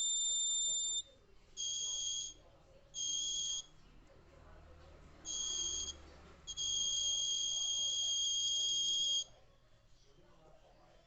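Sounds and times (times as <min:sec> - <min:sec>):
alarm buzzer beeping: 0:00.0 - 0:01.0, 0:06.6 - 0:09.2.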